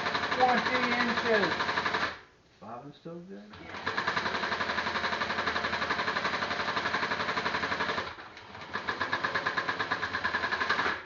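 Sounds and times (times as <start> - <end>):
sewing machine stitching: 0.0 - 2.2, 3.5 - 11.0.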